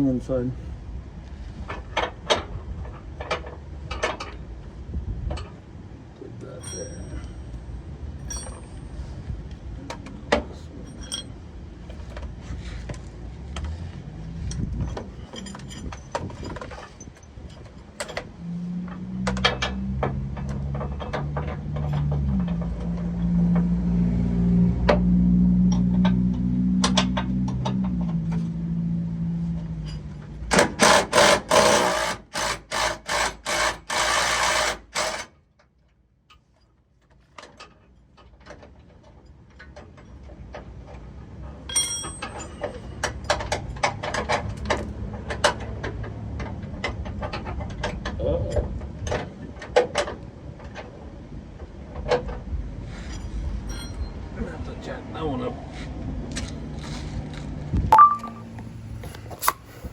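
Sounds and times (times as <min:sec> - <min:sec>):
tools and metal parts clinking: 0:06.6 - 0:09.1, 0:09.9 - 0:12.2, 0:14.5 - 0:18.3, 0:41.6 - 0:45.4, 0:53.0 - 0:54.2.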